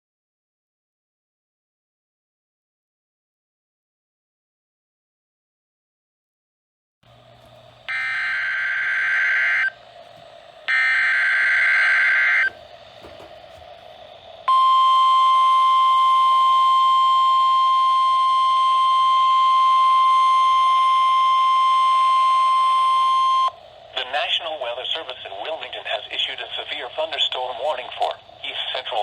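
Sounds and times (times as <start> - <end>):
steady alert alarm tone: 7.9 - 9.8, 10.7 - 12.6.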